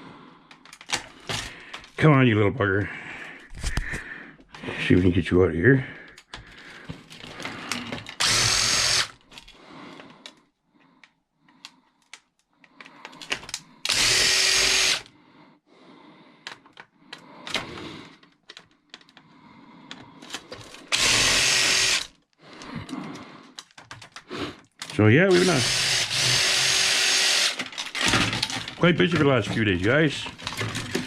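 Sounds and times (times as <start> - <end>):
power drill motor running: 8.2 - 9.2, 13.9 - 15.1, 20.9 - 22.1, 25.3 - 27.7.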